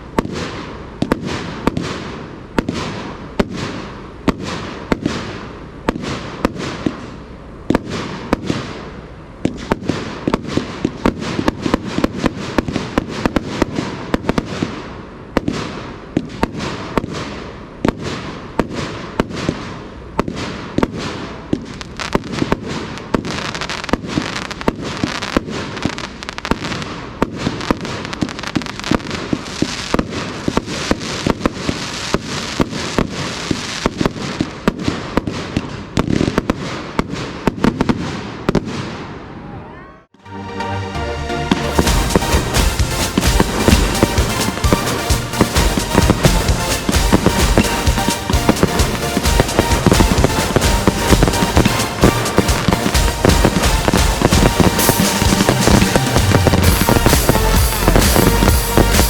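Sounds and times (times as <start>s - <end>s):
firework cake firing shots: 0.0s - 39.1s, 41.8s - 59.0s
crackle of bursting stars: 41.5s - 59.0s.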